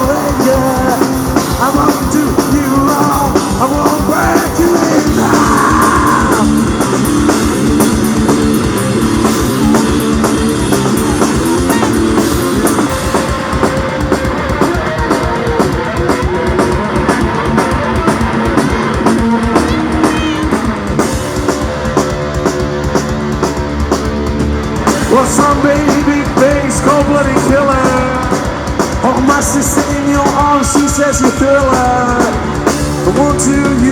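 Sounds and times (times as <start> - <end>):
driving drum beat: 0.0 - 33.9
electric guitar riff: 0.0 - 33.9.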